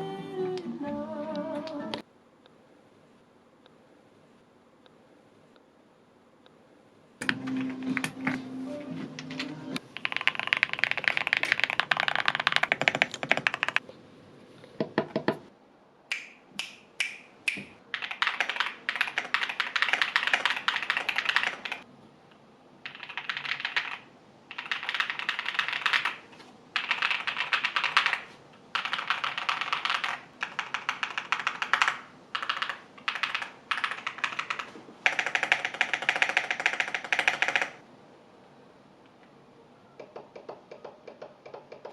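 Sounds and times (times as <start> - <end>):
mechanical keyboard typing: 9.9 - 13.8, 17.9 - 21.8, 22.8 - 26.2, 26.8 - 37.8.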